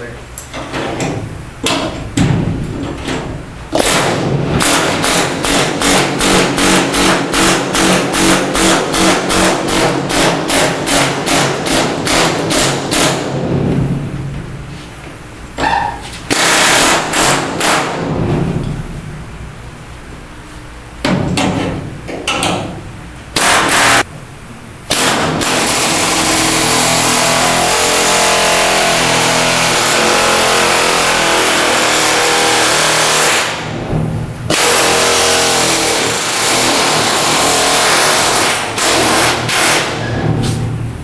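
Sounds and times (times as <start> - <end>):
air chisel hammering metal: 3.8 - 13.2.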